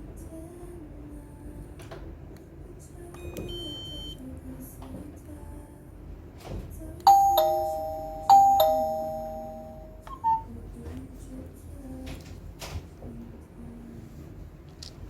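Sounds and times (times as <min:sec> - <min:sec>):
doorbell ding-dong chime: 0:07.1 - 0:10.4.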